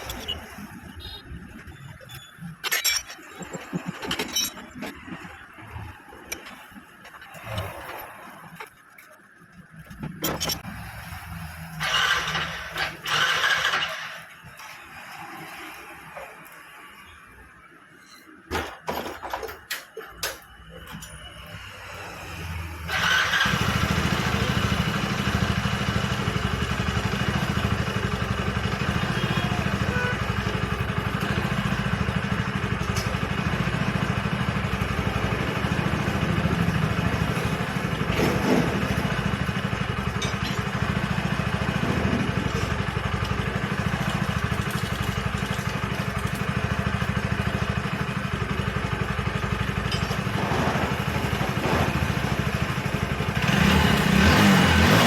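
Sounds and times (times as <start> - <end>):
motorcycle engine idling: 22.9 - 50.3.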